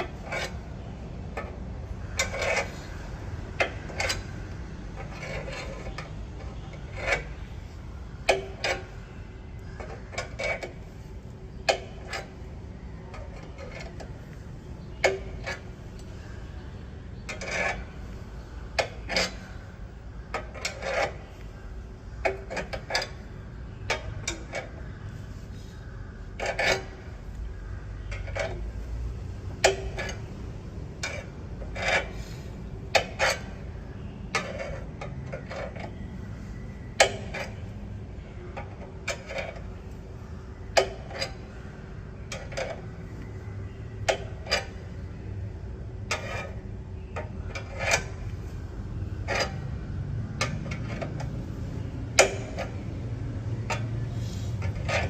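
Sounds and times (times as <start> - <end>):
car jack clicking and knocking: 29.5 - 30.4, 36.9 - 37.8, 52.1 - 55.0.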